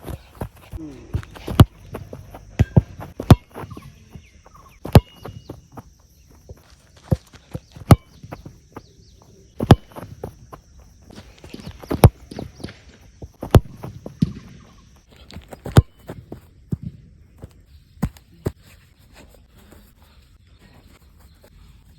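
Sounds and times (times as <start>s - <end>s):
football being kicked: 0.0s - 5.8s, 6.5s - 8.9s, 9.6s - 10.4s, 11.1s - 18.6s
studded footsteps: 0.0s - 21.9s.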